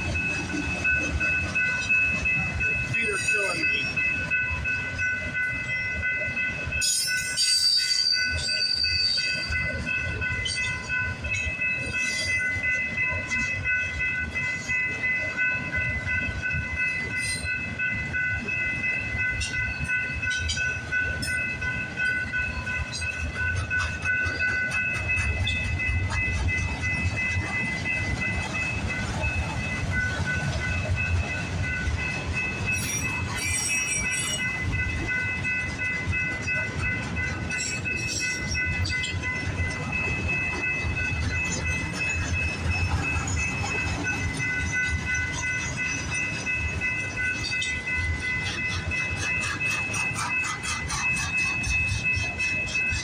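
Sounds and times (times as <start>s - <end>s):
train cars rumbling: 0.0s - 53.0s
wheels clicking over rail joints: 15.6s - 53.0s.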